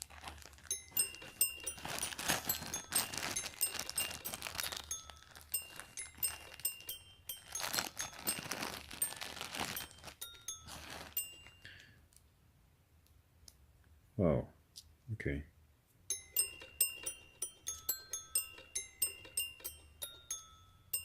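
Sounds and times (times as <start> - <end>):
package wrapping crinkling and tearing: 0.0 - 11.7.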